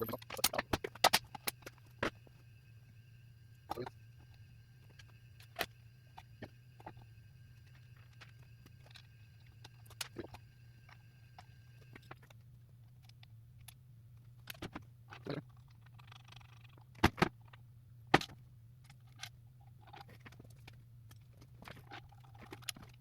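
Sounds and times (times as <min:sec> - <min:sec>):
tools and parts clicking and knocking: 0:00.0 - 0:02.2, 0:14.4 - 0:23.0
steady low hum: 0:00.0 - 0:23.0.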